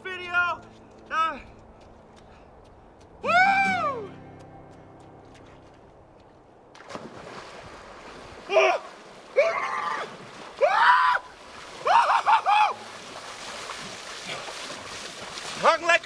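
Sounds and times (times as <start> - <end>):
man yelling: 3.2 - 4.1, 8.5 - 11.3
rushing river water: 5.4 - 16.0
splash of person jumping in: 6.7 - 15.7.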